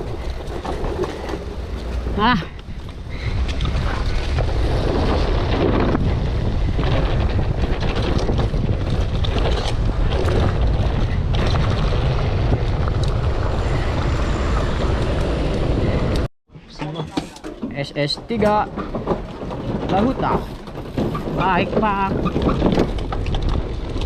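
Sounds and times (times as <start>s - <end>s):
wind buffeting microphone: 0.0s - 16.3s
bike knocking and rattling: 0.0s - 24.0s.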